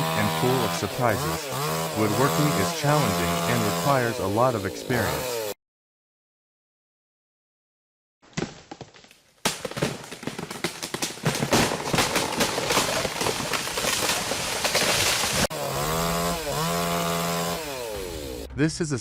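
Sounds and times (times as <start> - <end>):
chainsaw engine running: 0.0 - 5.6, 10.3 - 18.5
wood splintering and branches snapping: 8.2 - 17.8.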